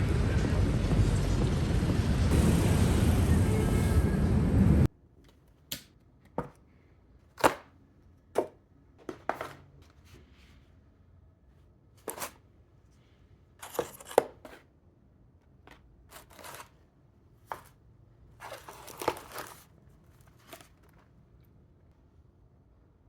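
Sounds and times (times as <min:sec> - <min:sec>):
rustling: 0:15.7 - 0:16.8, 0:17.4 - 0:21.2.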